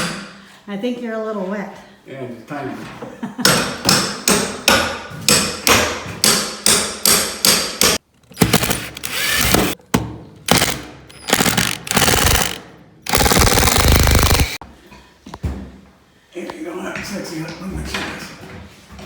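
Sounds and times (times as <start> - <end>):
rasping grinding bursts: 8.5 - 9.8, 10.6 - 14.6.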